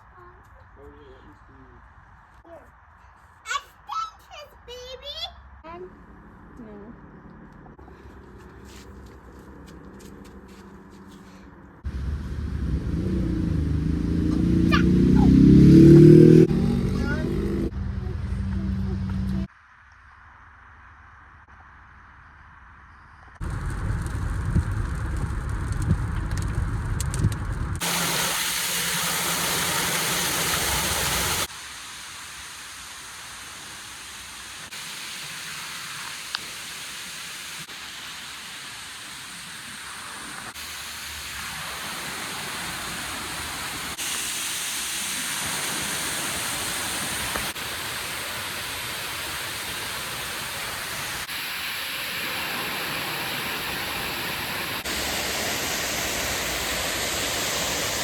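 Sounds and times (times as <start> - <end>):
rushing water from waterfalls: 27.8 - 58.0.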